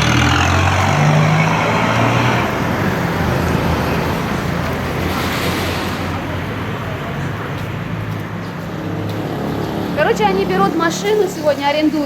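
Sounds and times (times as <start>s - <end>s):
street traffic noise: 0.0s - 12.0s
vehicle engine humming: 0.0s - 12.0s.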